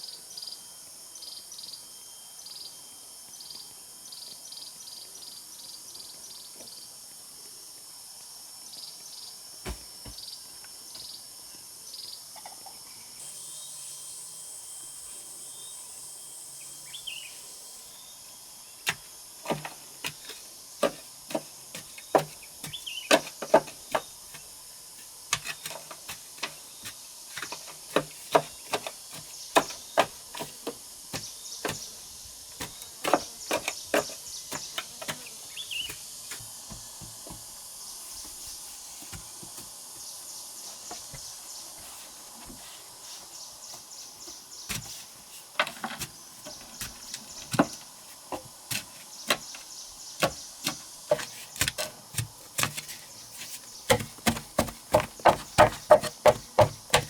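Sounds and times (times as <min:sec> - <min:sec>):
insects chirping: 0:00.0 - 0:57.0
sharp irregular knocks: 0:53.9 - 0:57.0.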